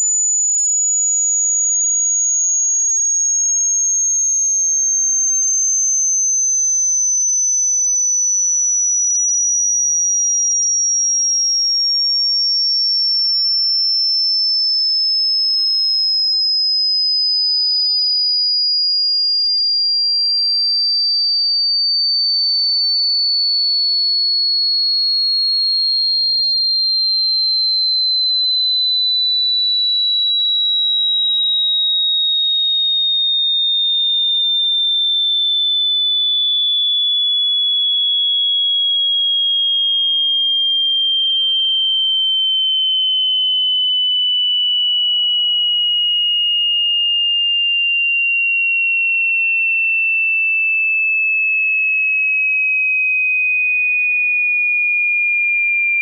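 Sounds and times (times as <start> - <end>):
falling sine-wave test tone: 0.0 - 29.4, 40.0 - 47.7.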